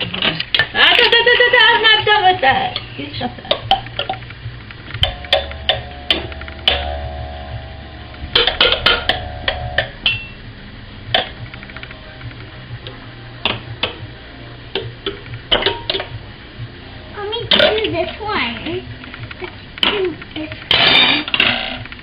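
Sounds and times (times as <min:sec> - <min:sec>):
sustained ringing tone: 0:05.0 - 0:11.4
kitchen objects knocking: 0:08.3 - 0:10.3.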